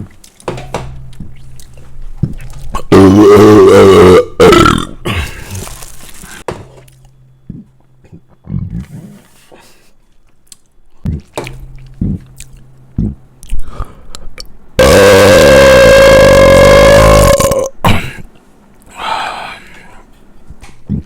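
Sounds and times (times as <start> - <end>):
person burping loudly: 2.2 - 5.8, 14.8 - 18.2.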